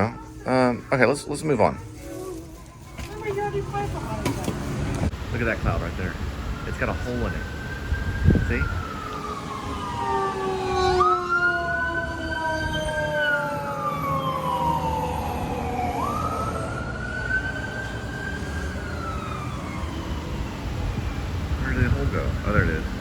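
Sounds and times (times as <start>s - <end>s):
low traffic rumble: 0.0s - 23.0s
emergency siren wailing: 5.3s - 23.0s.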